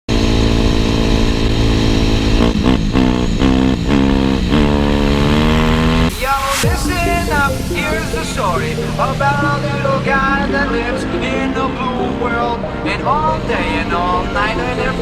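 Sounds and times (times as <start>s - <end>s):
motorcycle engine revving: 0.1s - 6.2s
music: 6.1s - 15.0s.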